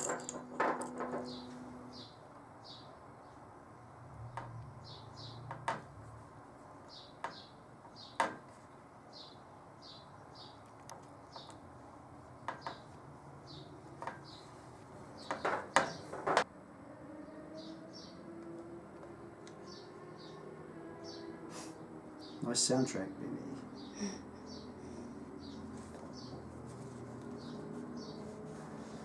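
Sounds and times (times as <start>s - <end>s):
small parts clicking and knocking: 0.0s - 1.6s.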